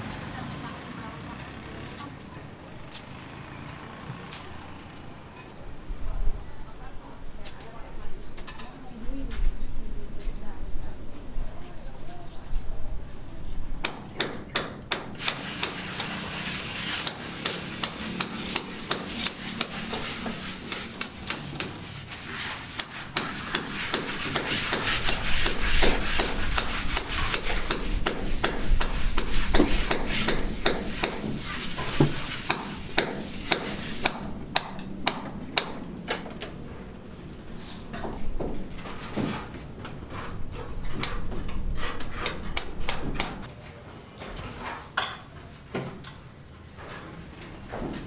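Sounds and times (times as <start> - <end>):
hammer strikes: 13.8 - 36.0, 42.1 - 43.5.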